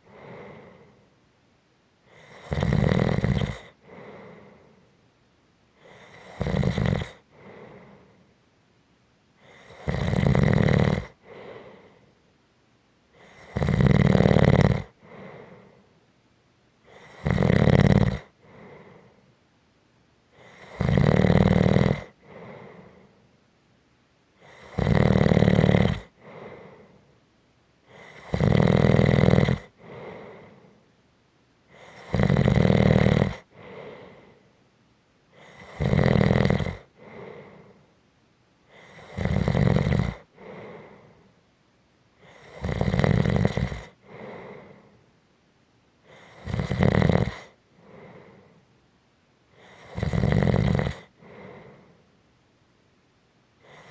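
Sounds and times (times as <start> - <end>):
faint breath: 0.0 - 1.3, 3.4 - 5.1, 7.0 - 8.4, 11.1 - 12.4, 14.9 - 16.1, 18.3 - 19.4, 22.1 - 23.5, 26.2 - 28.3, 29.7 - 31.0, 33.4 - 34.7, 36.8 - 38.0, 38.6 - 39.2, 40.2 - 41.5, 43.6 - 45.2, 46.0 - 46.5, 47.4 - 48.8, 50.9 - 52.2, 53.6 - 53.9
person snoring: 2.1 - 4.7, 5.8 - 8.1, 9.4 - 12.0, 13.2 - 15.8, 16.9 - 19.1, 20.4 - 23.1, 24.4 - 27.0, 27.9 - 30.8, 31.7 - 34.4, 35.4 - 37.8, 38.7 - 41.2, 42.2 - 45.0, 46.1 - 48.4, 49.6 - 52.0.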